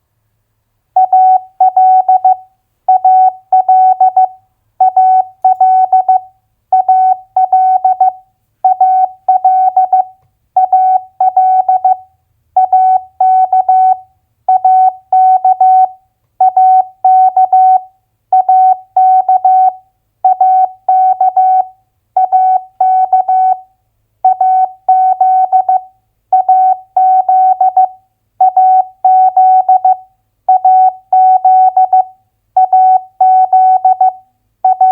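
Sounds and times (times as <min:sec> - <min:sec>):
morse code tone: 0:01.0 - 0:06.2, 0:06.8 - 0:12.0, 0:26.4 - 0:34.9.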